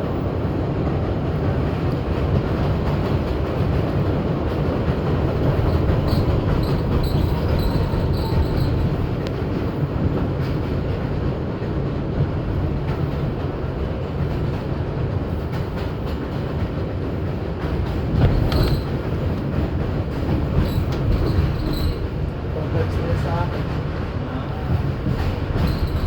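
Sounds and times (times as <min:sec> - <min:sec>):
subway car wheels rumbling: 0:00.0 - 0:26.0
wheels clacking over rail joints: 0:02.1 - 0:11.8, 0:12.4 - 0:26.0.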